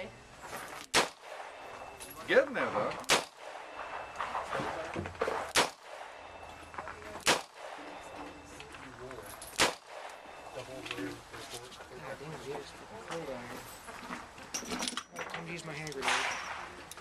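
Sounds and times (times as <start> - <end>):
handgun shots: 0.9 - 1.6, 3.0 - 4.2, 5.5 - 6.3, 7.2 - 8.0, 9.6 - 10.3.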